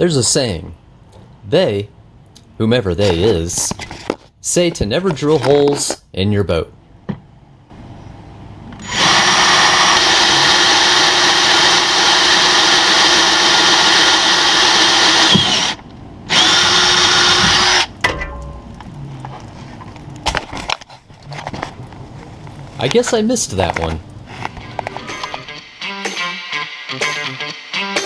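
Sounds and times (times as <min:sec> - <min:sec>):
power drill boring: 0:08.8 - 0:17.9.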